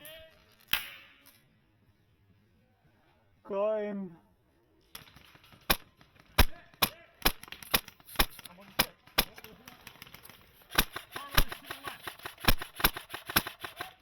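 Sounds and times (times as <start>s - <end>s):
airsoft rifle shots: 5.0s - 14.0s.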